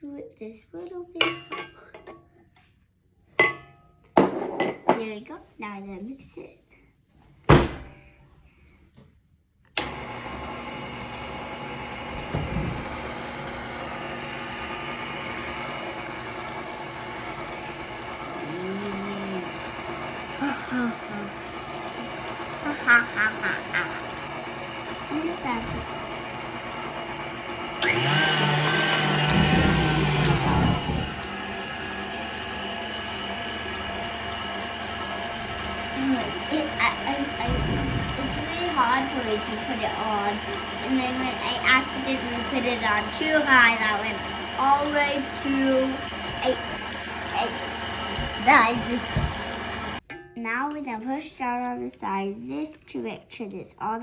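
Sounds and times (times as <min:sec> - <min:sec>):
stand mixer motor running: 0:09.8 - 0:50.0.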